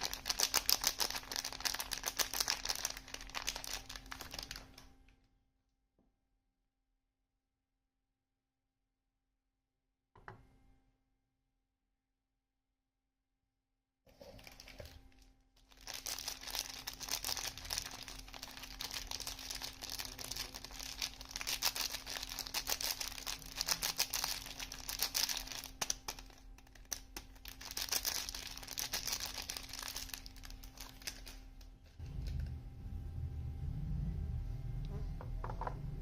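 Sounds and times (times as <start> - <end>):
wrapper crinkling and tearing: 0.0 - 4.9, 14.1 - 32.5.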